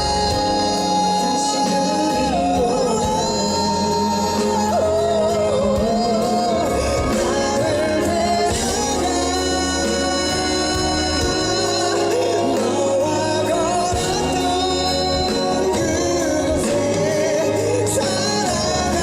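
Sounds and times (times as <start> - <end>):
live band music: 0.0 - 19.0
person singing: 0.0 - 19.0.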